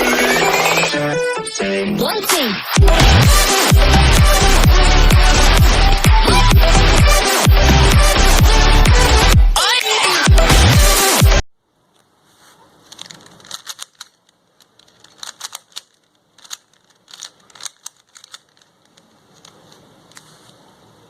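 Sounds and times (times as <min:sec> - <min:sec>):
puzzle cube plastic clicks: 0:12.8 - 0:20.6.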